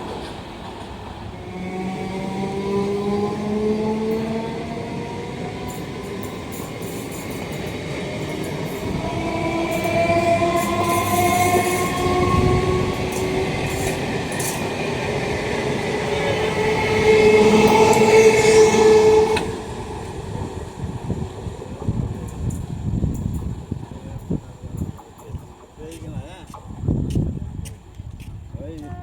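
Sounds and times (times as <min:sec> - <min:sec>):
rumble of train coaches: 0:00.0 - 0:29.0
wheels clicking on rail joints: 0:05.0 - 0:29.0
locomotive horn blasts: 0:09.7 - 0:13.3.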